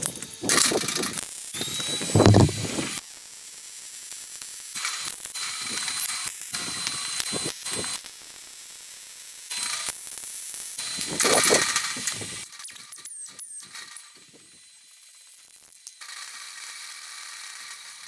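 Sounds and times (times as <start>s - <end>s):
thin high whine: 0.0s - 3.1s, 10.8s - 17.8s
mechanical hiss: 0.0s - 4.1s.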